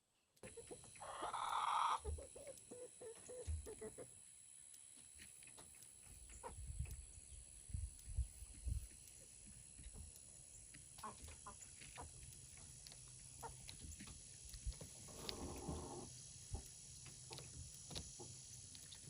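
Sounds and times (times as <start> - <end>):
chickens clucking: 0.4 - 4.2, 5.7 - 6.9, 10.7 - 19.0.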